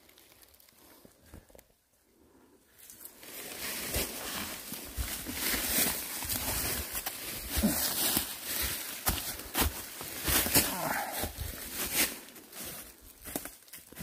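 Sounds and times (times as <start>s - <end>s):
footsteps crunching dry leaves: 3.2s - 14.0s.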